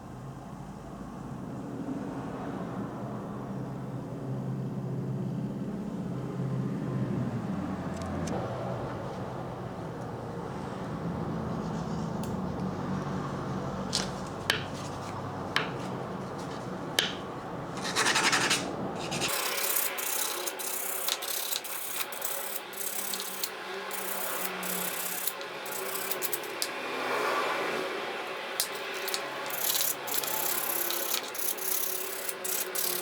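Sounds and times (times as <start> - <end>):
sharp clicks and knocks: 17.0 - 17.2
hand scraping on metal: 17.8 - 21.4.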